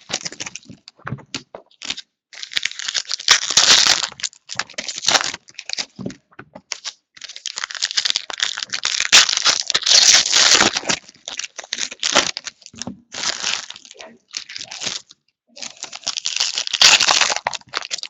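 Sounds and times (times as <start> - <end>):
wrappers crinkling: 0.0 - 6.1, 6.7 - 18.0.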